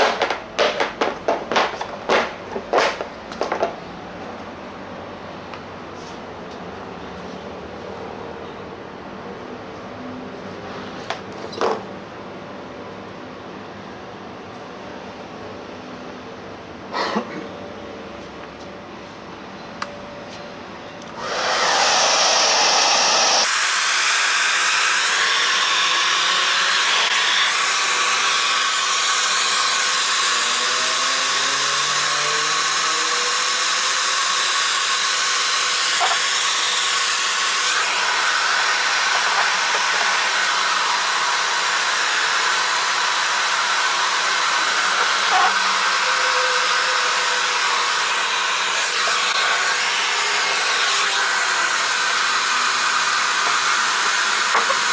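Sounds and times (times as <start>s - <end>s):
hair dryer blowing: 21.1s - 54.9s.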